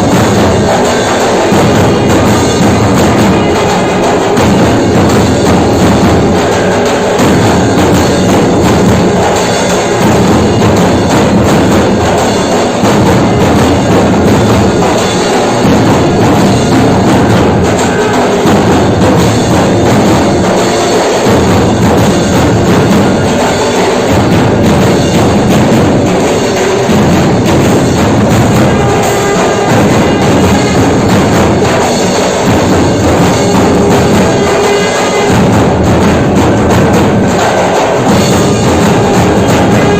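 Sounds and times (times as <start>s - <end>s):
loud music with percussion: 0.0s - 39.9s.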